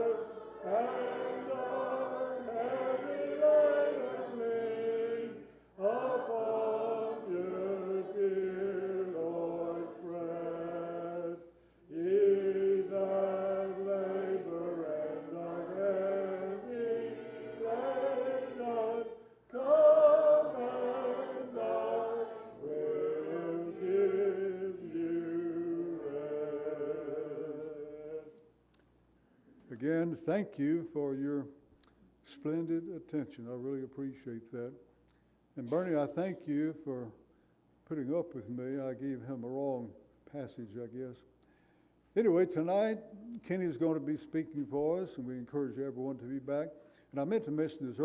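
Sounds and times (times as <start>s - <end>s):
congregation singing a cappella: 0.0s - 28.5s.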